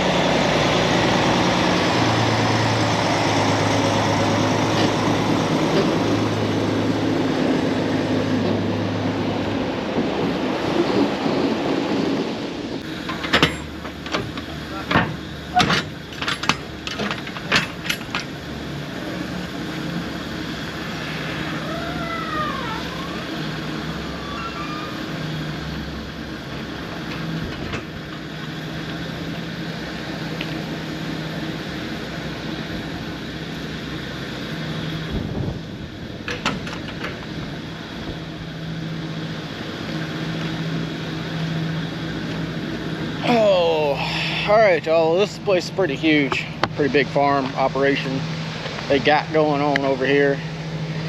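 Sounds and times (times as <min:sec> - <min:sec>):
truck diesel engine running: 0:00.0 - 0:51.0
knocks and rattles: 0:13.0 - 0:18.4
brief squeal: 0:24.1 - 0:25.2.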